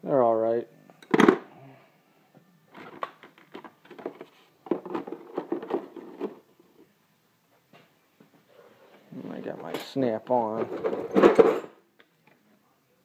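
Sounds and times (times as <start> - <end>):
wrenches clattering in metal drawer: 10.6 - 11.8.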